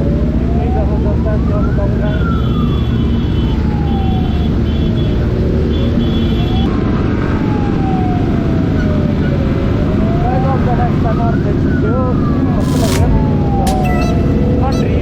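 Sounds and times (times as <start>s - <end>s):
siren wailing: 11.8s - 15.0s.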